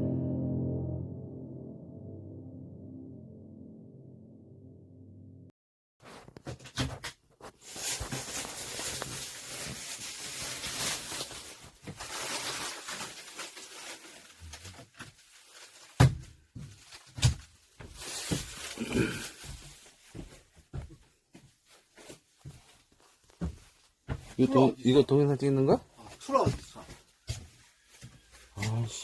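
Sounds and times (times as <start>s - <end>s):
rustling or scraping: 6.0s - 20.6s.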